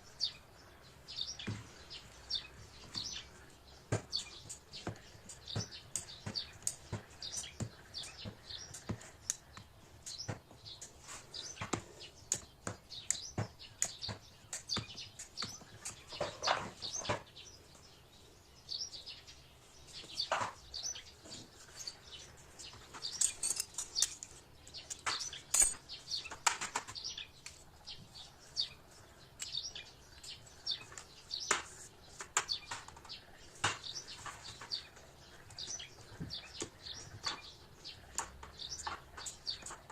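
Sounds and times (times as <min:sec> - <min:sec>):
small birds chirping: 0:00.0 - 0:39.9
sharp clicks and taps: 0:11.6 - 0:16.0.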